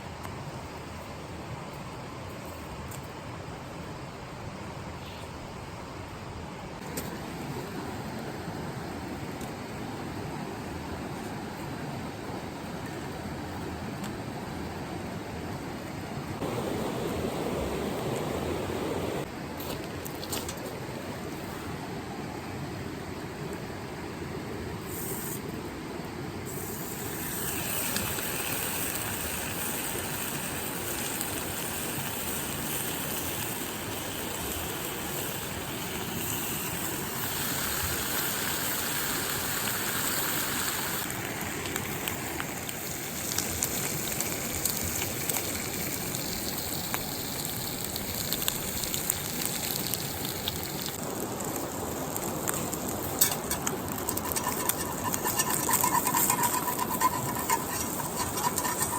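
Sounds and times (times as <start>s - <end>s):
river water rushing: 16.4s - 19.3s.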